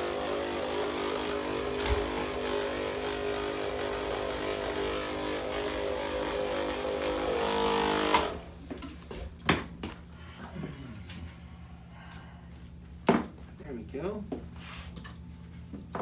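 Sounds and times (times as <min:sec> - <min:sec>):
massage gun buzzing: 0:00.0 - 0:08.6.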